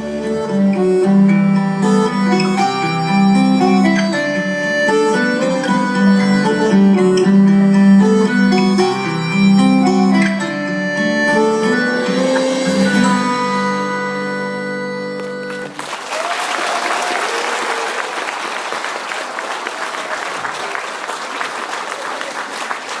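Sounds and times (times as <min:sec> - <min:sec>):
audience applause: 0:15.5 - 0:23.0.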